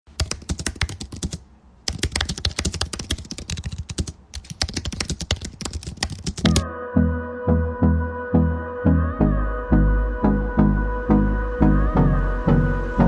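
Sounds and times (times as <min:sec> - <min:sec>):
rapid dense clicking: 0:00.2 - 0:06.6.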